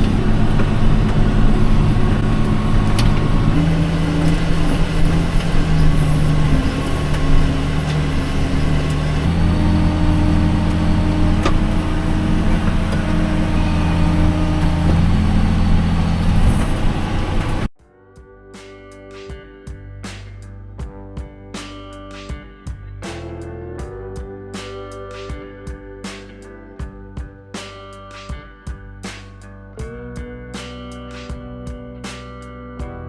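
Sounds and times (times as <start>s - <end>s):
vehicle engine droning: 0.0s - 17.7s.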